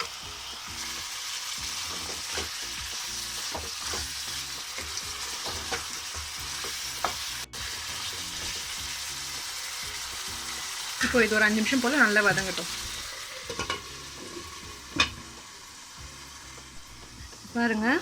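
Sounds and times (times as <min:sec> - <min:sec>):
chicken sizzling in a pan: 0:00.0 - 0:18.0
spoon scraping a pan: 0:01.6 - 0:08.8, 0:12.2 - 0:15.4.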